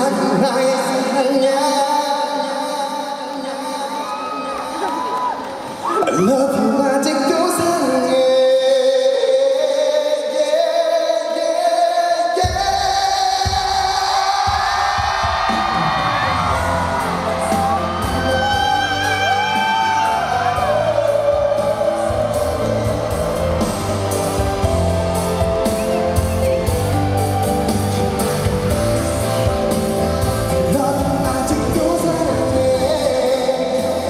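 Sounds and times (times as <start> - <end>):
live pop ballad: 0.0 - 34.0
audience shouts and whoops: 3.9 - 6.2, 13.7 - 29.2.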